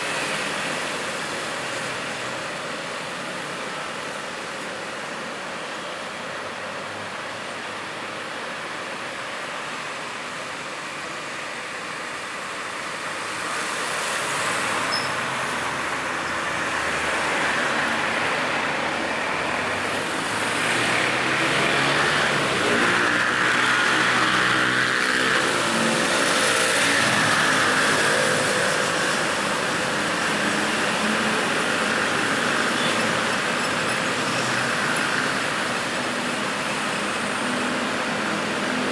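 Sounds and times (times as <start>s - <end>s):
tyres hissing on road: 0.0s - 38.9s
vehicle engines humming: 14.4s - 38.9s.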